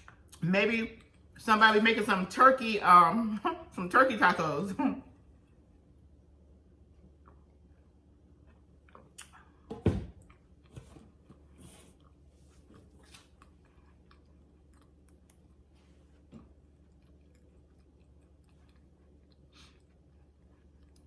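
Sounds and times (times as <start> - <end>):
chewing and mouth sounds: 6.8 - 21.0.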